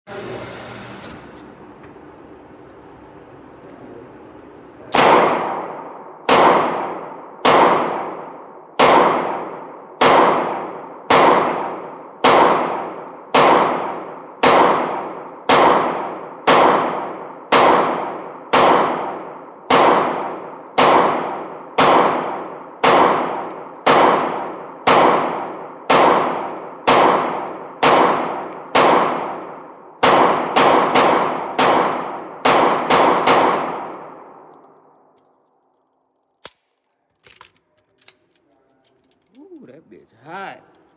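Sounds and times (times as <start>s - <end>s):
pistol shots: 4.9s - 34.8s.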